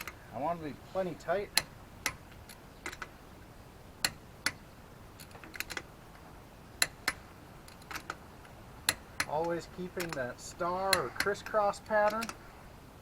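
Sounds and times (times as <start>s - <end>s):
torque wrench clicking: 6.8s - 12.4s.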